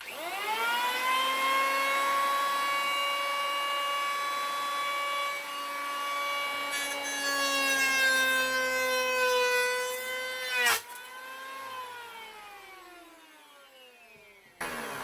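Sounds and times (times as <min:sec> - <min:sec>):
electric hand planer cutting wood: 0:00.0 - 0:15.0.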